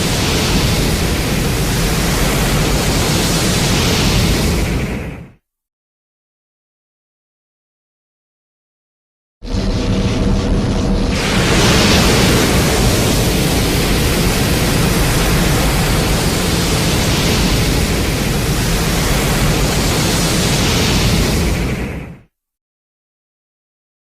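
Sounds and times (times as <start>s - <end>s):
loud rushing hiss: 0.0s - 5.0s, 9.5s - 22.1s.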